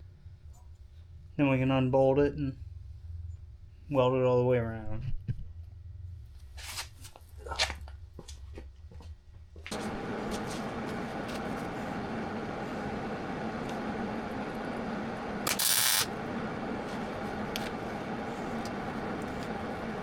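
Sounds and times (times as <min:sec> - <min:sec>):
faint hum: 0:09.6 - 0:20.0
welder hissing: 0:09.7 - 0:20.0.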